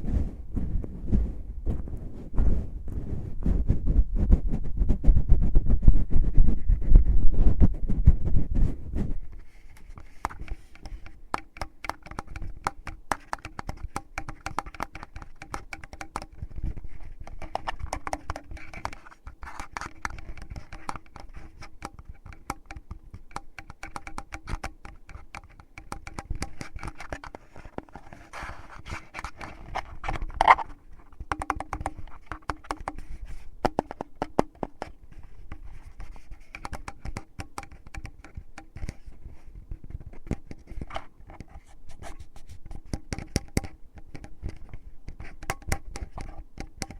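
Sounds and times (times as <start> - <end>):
fingers scratching microphone: 0.0 - 46.9.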